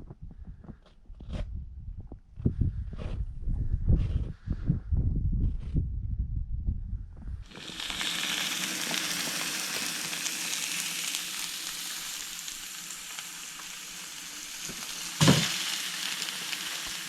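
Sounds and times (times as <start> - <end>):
steaks sizzling in a frying pan: 7.5 - 17.0.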